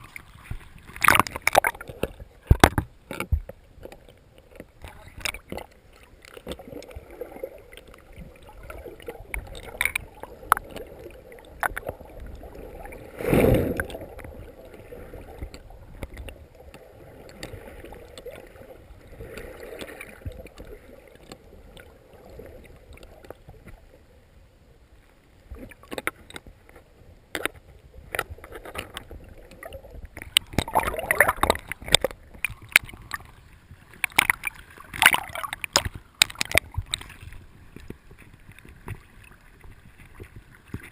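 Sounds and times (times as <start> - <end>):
water background: 0.0 - 40.9.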